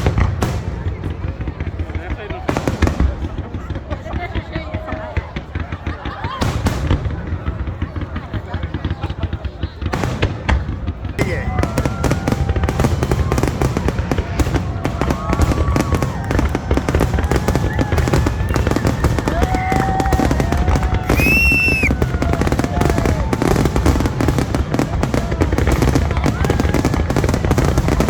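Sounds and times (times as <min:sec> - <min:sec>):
fireworks crackling: 0:00.0 - 0:28.0
people's voices: 0:00.0 - 0:28.0
shrill firework whistle: 0:15.5 - 0:24.1.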